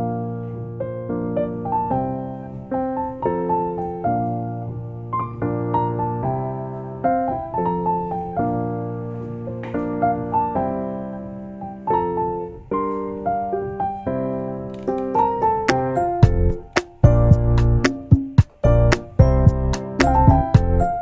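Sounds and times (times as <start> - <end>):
gentle piano tune: 0.0 - 21.0.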